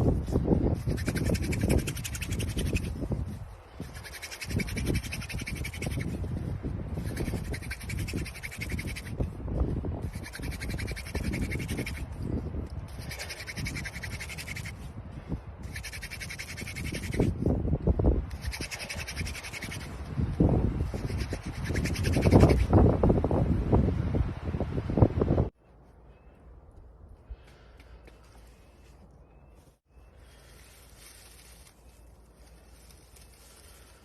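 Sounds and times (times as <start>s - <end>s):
rough rubbing and handling noise: 0.0s - 9.4s, 10.0s - 15.0s, 15.6s - 17.5s, 18.3s - 22.7s, 28.1s - 34.0s
wooden spindle grinding and squeaking: 0.7s - 6.2s, 7.0s - 9.2s, 10.0s - 12.1s, 12.9s - 14.8s, 15.6s - 17.4s, 18.3s - 20.0s, 20.9s - 22.7s.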